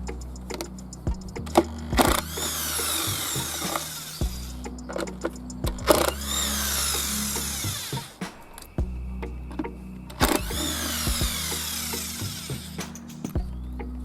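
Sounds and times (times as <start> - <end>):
power tool running: 1.6 - 5.0, 5.7 - 8.2, 10.1 - 13.0.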